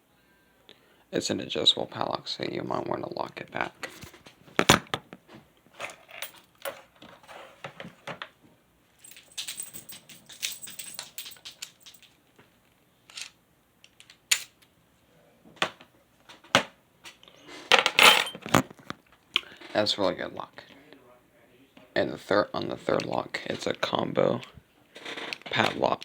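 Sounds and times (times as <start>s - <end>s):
keys jingling: 9.0s - 12.2s, 18.0s - 18.4s.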